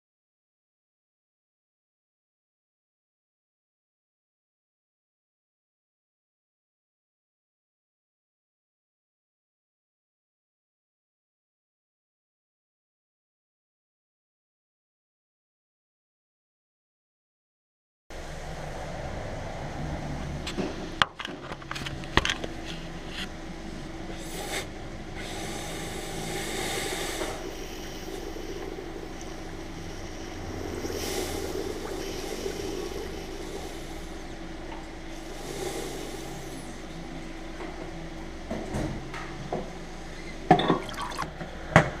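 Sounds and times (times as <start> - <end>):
car engine humming: 18.2 - 37.7.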